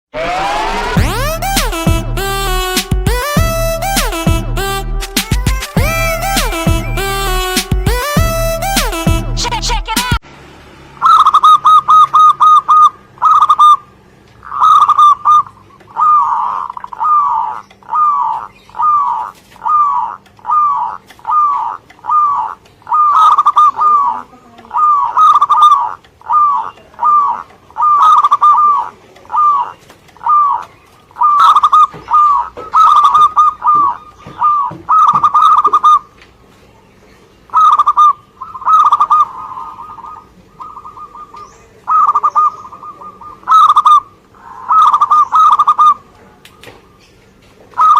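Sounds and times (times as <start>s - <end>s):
dove cooing: 11.0s - 36.2s, 37.5s - 46.8s, 47.7s - 47.9s.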